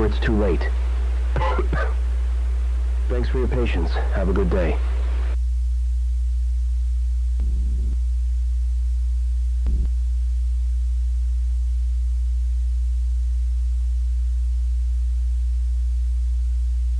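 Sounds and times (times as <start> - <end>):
low electronic drone: 0.0 - 5.4.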